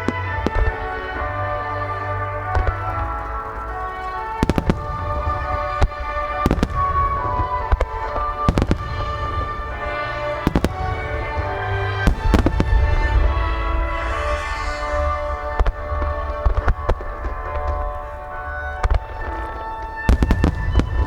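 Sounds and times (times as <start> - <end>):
deep rumble: 0.0 - 19.2
fireworks bangs: 0.0 - 21.0
music playing: 0.0 - 21.0.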